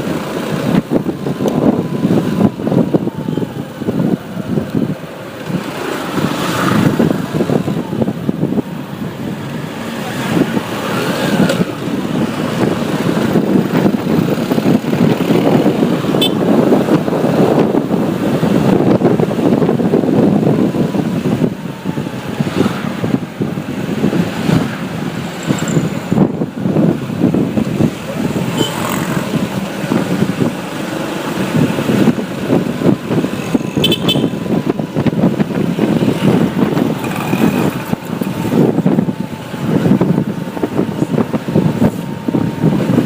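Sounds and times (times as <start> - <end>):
motorbike engine rumble: 0.0 - 43.0
surrounding traffic: 0.0 - 43.0.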